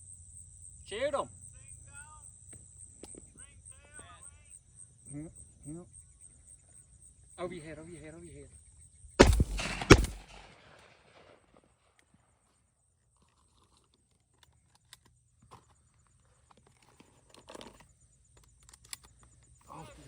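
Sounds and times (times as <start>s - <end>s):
shotgun shots: 9.2s - 12.0s.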